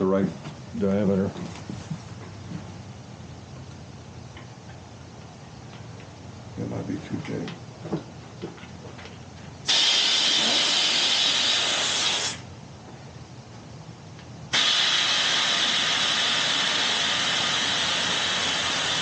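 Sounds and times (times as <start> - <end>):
air hissing from tyre valve: 9.6 - 12.5, 14.5 - 19.0.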